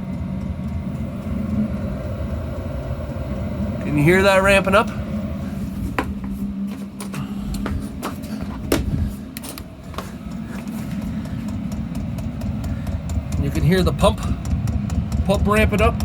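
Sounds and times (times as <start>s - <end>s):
fan and combustion rumble: 0.0s - 16.0s
fuel pump ticking: 5.8s - 16.0s.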